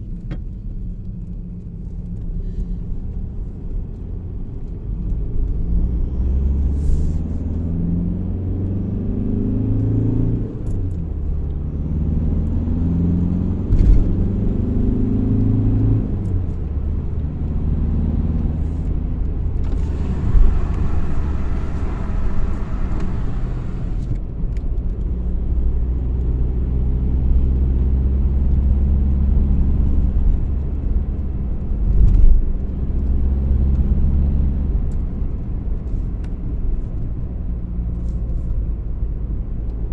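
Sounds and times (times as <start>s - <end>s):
diesel car engine running: 15.6s - 26.4s.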